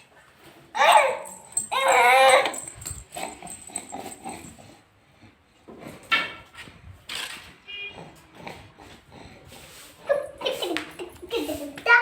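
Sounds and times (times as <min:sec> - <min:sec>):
dog crying: 0:00.8 - 0:02.8.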